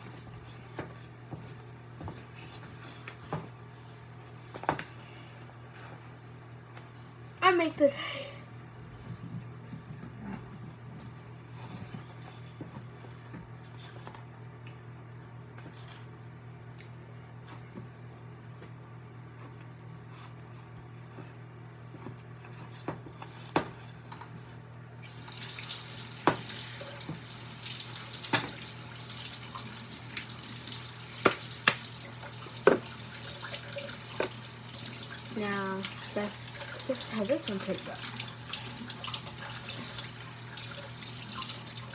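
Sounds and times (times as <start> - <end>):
water running from a tap: 25.0 - 41.9.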